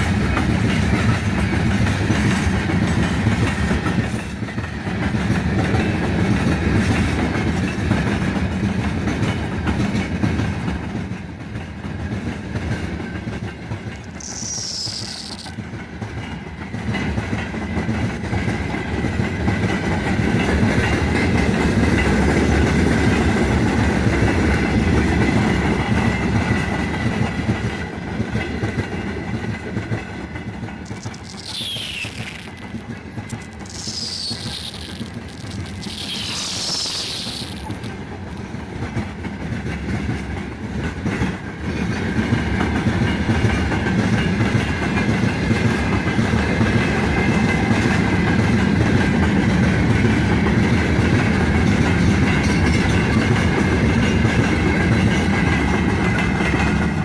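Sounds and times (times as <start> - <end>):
train wheels clattering over rails: 0.0 - 57.0
high falling whistle: 14.2 - 15.6, 31.0 - 38.0.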